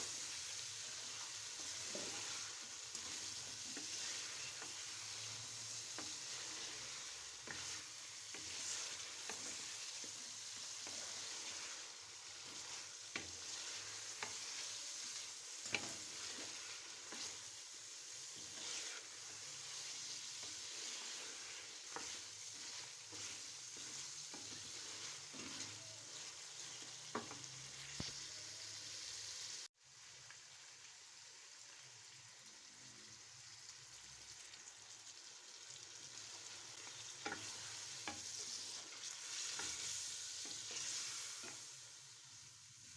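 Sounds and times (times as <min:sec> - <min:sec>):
meat sizzling in hot oil: 0:00.0 - 0:42.9
stirring clicks and scrapes: 0:15.2 - 0:17.4.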